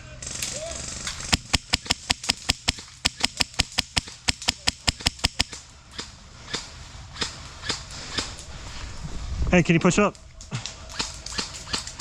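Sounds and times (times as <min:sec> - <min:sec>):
airsoft rifle shots: 0:00.2 - 0:08.4, 0:10.9 - 0:12.0.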